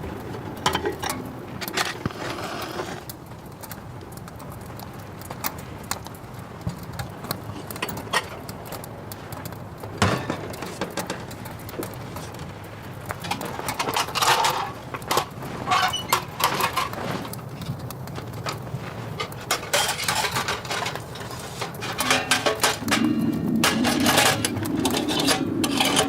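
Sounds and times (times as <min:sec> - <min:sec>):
objects knocking and clattering: 0:10.0 - 0:12.3, 0:13.2 - 0:26.0.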